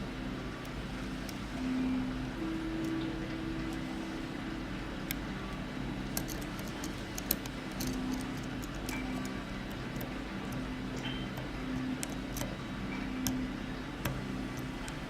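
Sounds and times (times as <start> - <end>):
steady low hum: 0.0 - 15.0
lock pick clicking on pins: 6.0 - 15.0.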